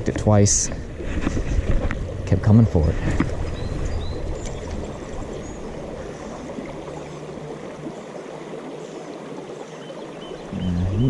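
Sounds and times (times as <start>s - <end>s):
stream water rushing: 0.0s - 11.0s.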